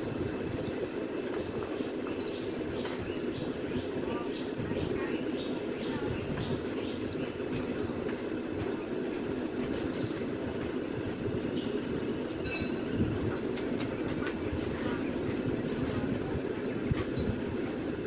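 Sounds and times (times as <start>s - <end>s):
bird high rising chirps: 0.0s - 4.6s, 9.8s - 10.7s, 13.3s - 14.0s.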